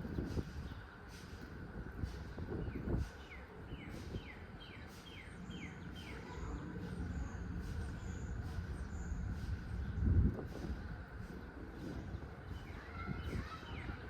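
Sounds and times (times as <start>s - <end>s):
steady low rumble: 0.0s - 14.0s
songbird singing: 2.5s - 14.0s.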